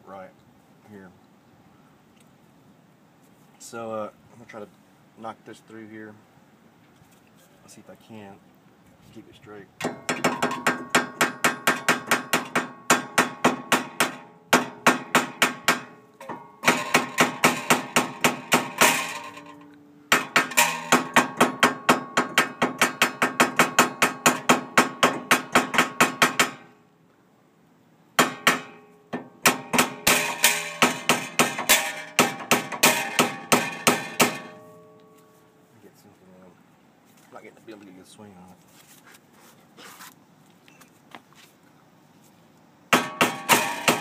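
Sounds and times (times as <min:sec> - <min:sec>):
hammer striking metal: 0:09.8 - 0:26.7, 0:28.2 - 0:35.3, 0:42.9 - 0:44.0.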